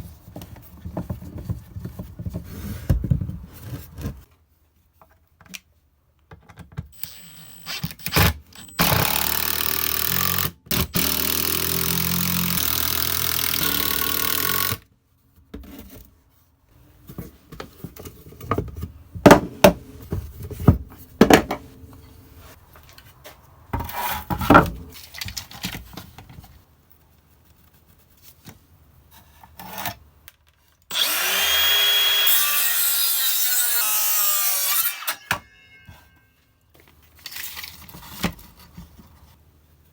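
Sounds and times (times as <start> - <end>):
power tool cutting wood: 30.9 - 35.8.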